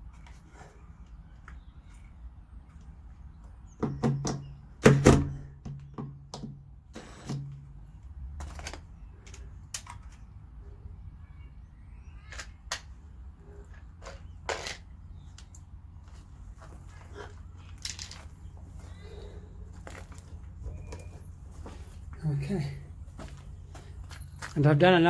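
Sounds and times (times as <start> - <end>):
sharp knocks and clicks: 3.8 - 6.6.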